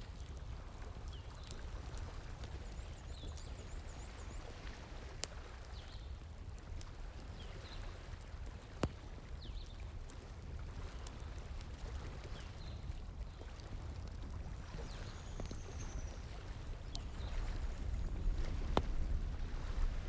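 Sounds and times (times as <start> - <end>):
wood fire crackling: 4.8 - 20.0.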